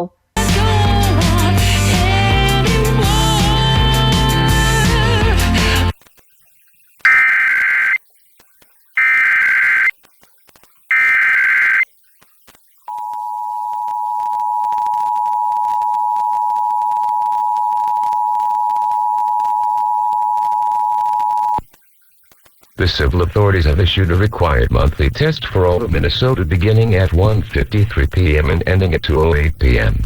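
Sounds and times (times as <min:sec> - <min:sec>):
data tone bursts: 0:06.0 - 0:10.1, 0:10.8 - 0:12.0, 0:12.8 - 0:27.1.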